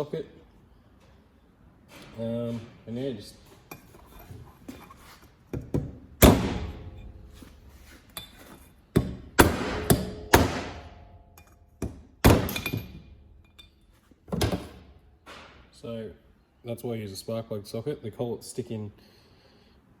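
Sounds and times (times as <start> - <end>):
hammer striking metal socket: 9.0 - 13.7.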